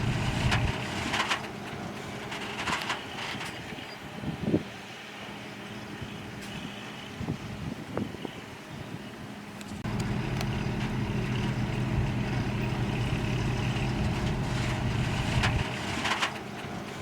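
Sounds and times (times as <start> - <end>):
heavy diesel engine under load: 0.0 - 7.7, 9.4 - 17.0.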